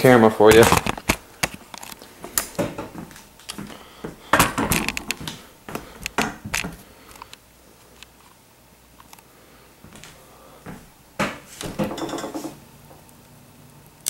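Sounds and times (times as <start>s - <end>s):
hard objects clicking and knocking: 0.5s - 3.6s, 4.3s - 7.3s, 11.6s - 12.6s.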